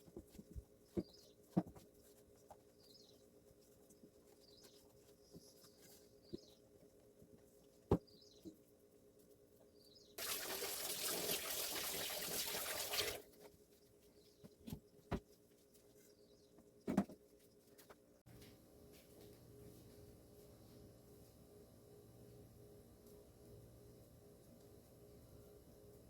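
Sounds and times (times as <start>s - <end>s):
water running into sink: 10.2s - 13.2s.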